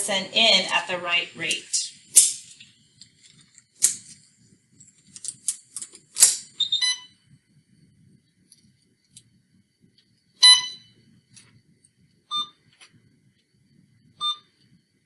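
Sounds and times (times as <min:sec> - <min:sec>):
short electronic beep: 0:10.4 - 0:10.9, 0:14.2 - 0:14.5.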